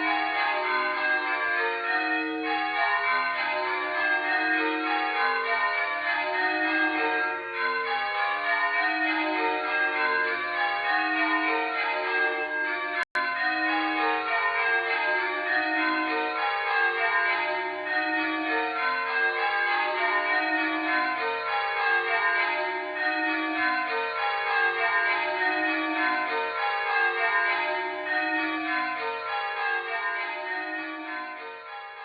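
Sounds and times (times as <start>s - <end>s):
church bells ringing: 0.0s - 32.0s.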